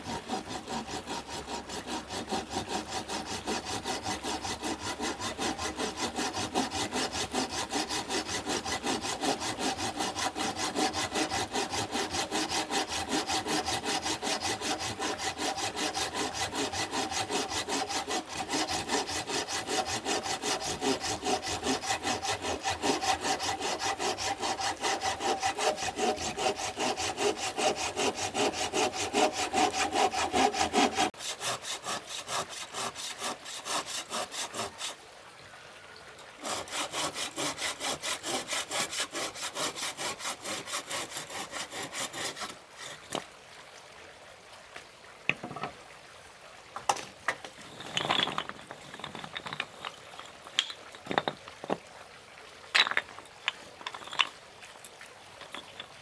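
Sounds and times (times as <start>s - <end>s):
hand saw cutting wood: 0.0s - 35.0s, 36.4s - 43.3s.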